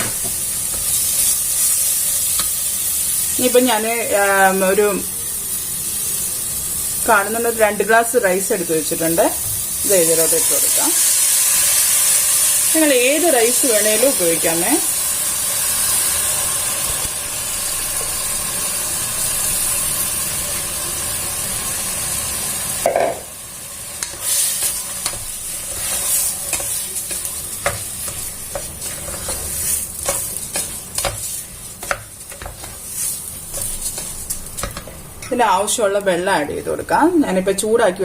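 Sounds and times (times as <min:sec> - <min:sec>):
rice sizzling in a pan: 0:00.0 - 0:37.4
spoon scraping a pan: 0:24.0 - 0:35.4.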